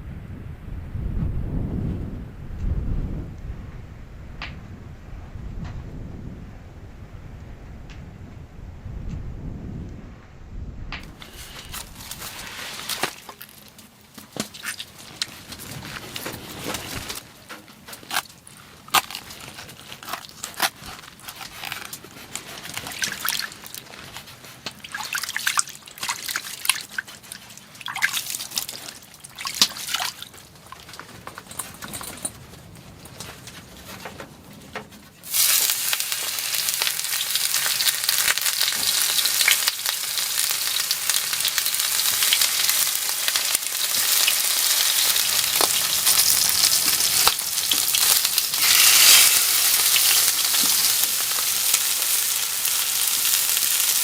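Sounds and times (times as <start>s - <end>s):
fish sizzling in a hot pan: 11.2s - 13.5s, 35.2s - 54.0s
handling clicks and rustles: 28.4s - 35.4s.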